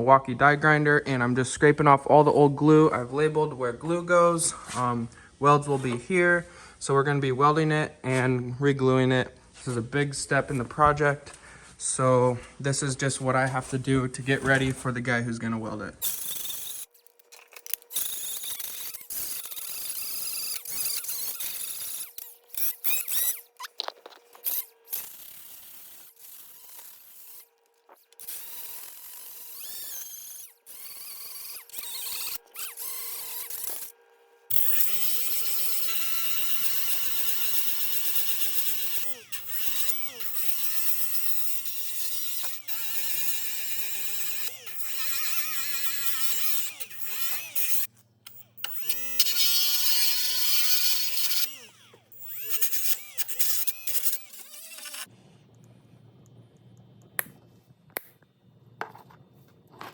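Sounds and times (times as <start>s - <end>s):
die grinder sanding metal: 16.0s - 55.1s.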